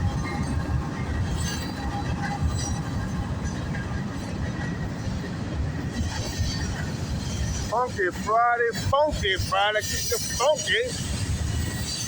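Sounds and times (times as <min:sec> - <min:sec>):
train wheels rumbling on rail: 0:00.0 - 0:12.0.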